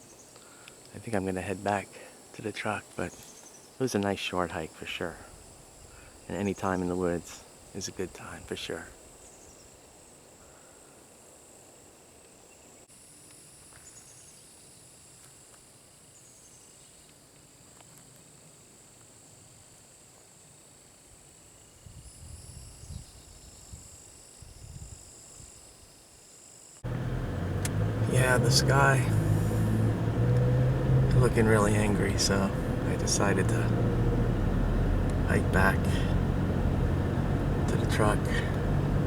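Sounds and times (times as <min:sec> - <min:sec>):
low rumbles: 0:26.8 - 0:39.0.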